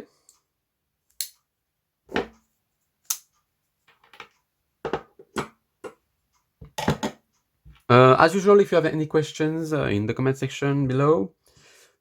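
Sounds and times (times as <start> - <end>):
knives knocking on a surface: 2.1 - 2.4.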